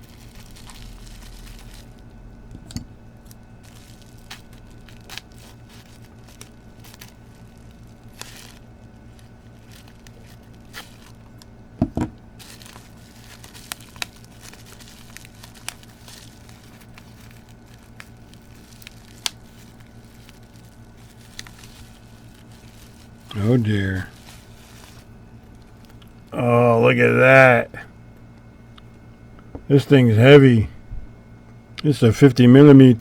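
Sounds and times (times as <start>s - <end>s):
packaging tearing and crinkling: 0.0s - 2.1s, 3.2s - 11.5s, 12.4s - 26.2s
steady low hum: 0.0s - 33.0s.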